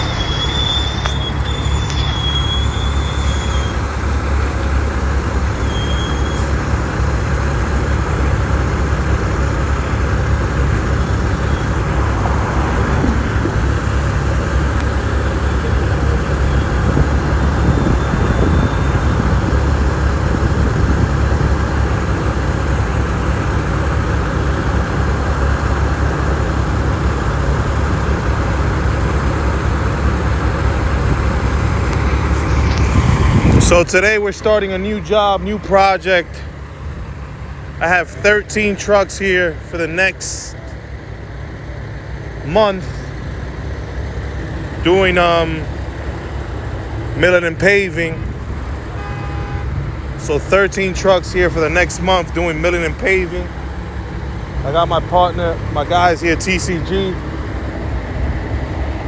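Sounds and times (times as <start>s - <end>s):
high-pitched squeal: 0.0s - 6.8s, 30.3s - 35.7s
diesel truck engine rumbling: 0.0s - 59.0s.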